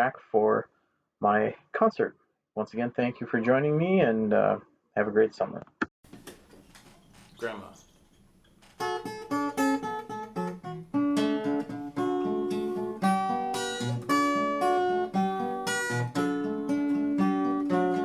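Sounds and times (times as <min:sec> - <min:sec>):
fingerstyle acoustic guitar: 0:08.6 - 0:18.0.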